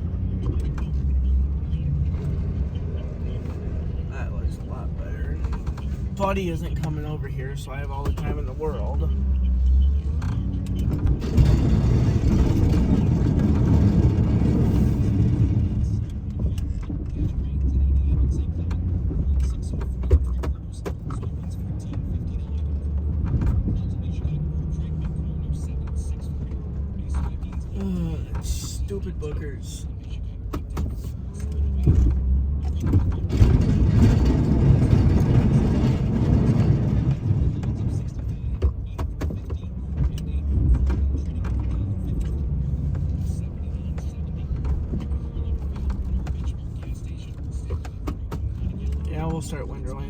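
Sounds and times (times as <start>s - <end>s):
snow plow truck rumble: 0.0s - 17.1s, 31.0s - 38.6s.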